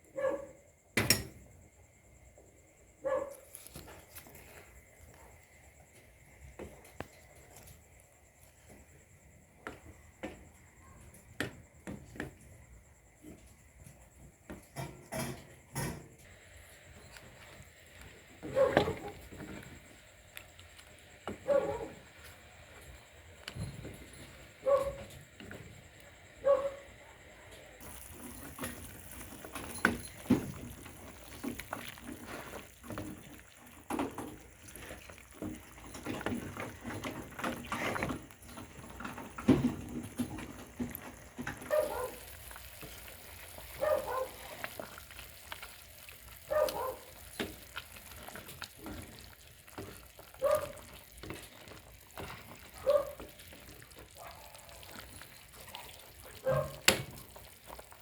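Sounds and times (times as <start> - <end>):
dog barking: 0.1 - 0.6, 3.0 - 3.4, 18.4 - 19.2, 21.4 - 22.0, 24.6 - 25.1, 26.4 - 26.9, 41.6 - 42.3, 43.8 - 44.6, 46.5 - 47.1, 50.4 - 50.8, 52.7 - 53.2, 54.2 - 54.8, 56.4 - 56.9
kitchen utensils clinking and scraping: 27.8 - 32.6.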